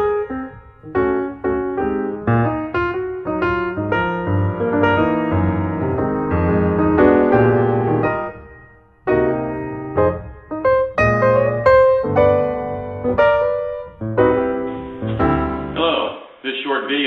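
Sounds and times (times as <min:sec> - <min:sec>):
piano music: 0:00.0 - 0:16.1.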